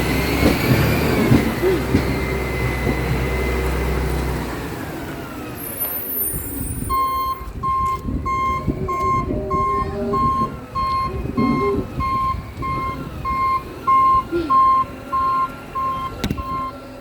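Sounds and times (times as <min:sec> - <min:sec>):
truck reversing alarm beeps: 0:00.0 - 0:04.4, 0:05.6 - 0:17.0
truck engine: 0:00.0 - 0:17.0
faint wavering scraping squeals: 0:05.6 - 0:07.4.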